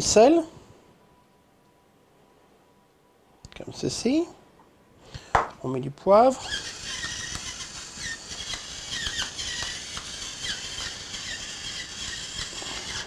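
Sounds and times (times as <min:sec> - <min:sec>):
pepper mill grinding: 0:06.4 - 0:13.0.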